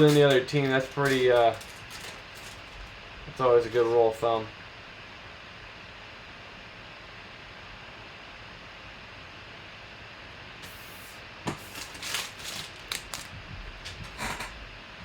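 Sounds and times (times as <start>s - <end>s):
trading card packaging rustling: 0.0s - 4.0s, 11.5s - 14.5s.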